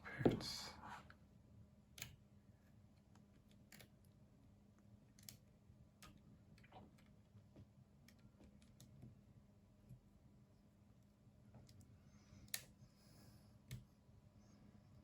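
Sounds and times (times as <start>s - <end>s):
faint steady hum: 0.0s - 15.0s
light clicks of plastic parts: 1.9s - 2.2s, 11.5s - 12.8s, 13.6s - 13.9s.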